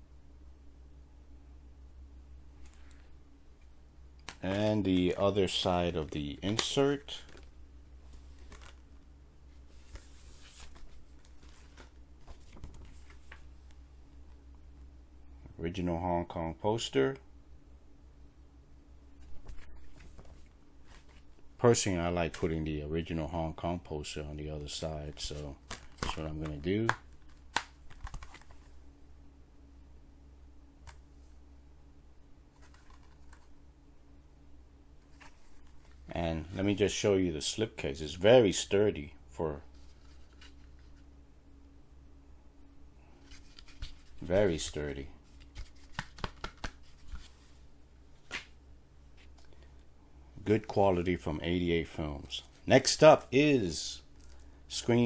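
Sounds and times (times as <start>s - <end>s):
low steady hum: 0.0s - 55.0s
paper rustling and crinkling: 6.4s - 8.9s, 9.6s - 13.5s, 24.7s - 28.7s, 43.2s - 47.6s.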